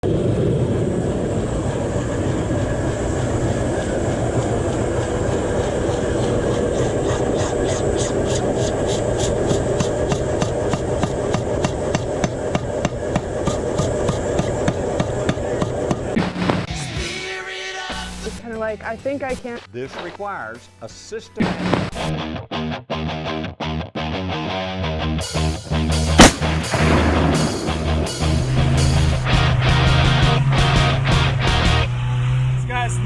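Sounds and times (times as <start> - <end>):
continuous rushing noise: 0.0 - 16.7
hammer blows on steel: 8.6 - 16.7, 25.3 - 29.2.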